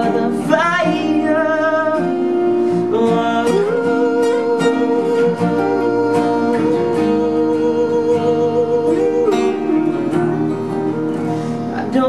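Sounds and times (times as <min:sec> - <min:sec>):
strummed guitar: 0:00.0 - 0:12.0
long held note: 0:01.0 - 0:11.5.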